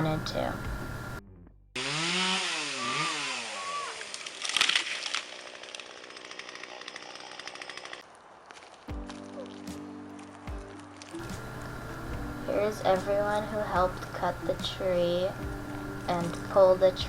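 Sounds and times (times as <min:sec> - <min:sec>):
chainsaw revving and cutting wood: 0:01.8 - 0:08.0.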